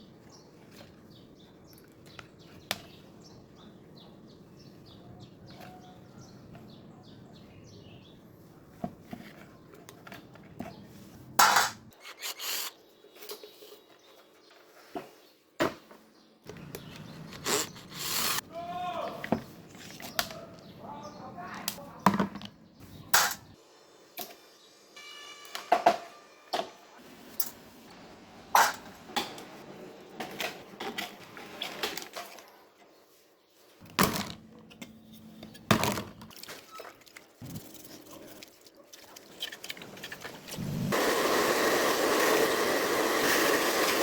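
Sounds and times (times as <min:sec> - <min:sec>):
small electric motor running: 0:17.3 - 0:18.4.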